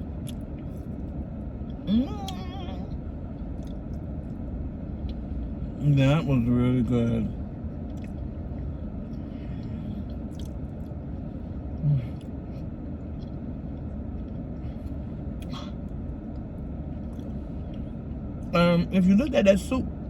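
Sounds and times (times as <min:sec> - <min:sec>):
car interior rumble: 0:00.0 - 0:20.0
person chewing food: 0:00.2 - 0:01.1, 0:03.4 - 0:04.4, 0:10.0 - 0:11.0.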